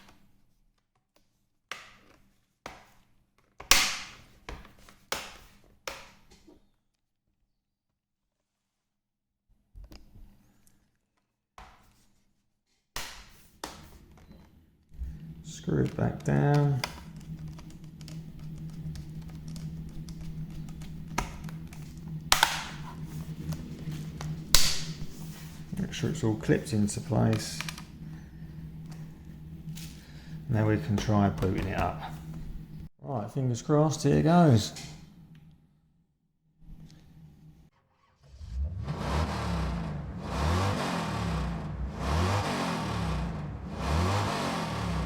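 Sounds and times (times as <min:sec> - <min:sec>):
steady low hum: 0:15.0 - 0:45.0.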